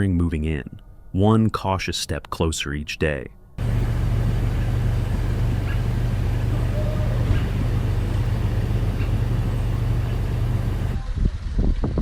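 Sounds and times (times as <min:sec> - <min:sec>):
low hum: 0:03.5 - 0:11.4.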